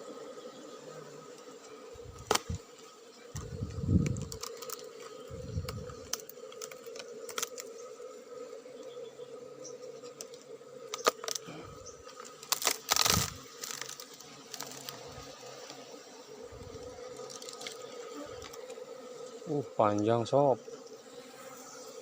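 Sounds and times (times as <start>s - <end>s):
bees buzzing: 0.0s - 22.0s
dull low thumps: 3.4s - 4.3s.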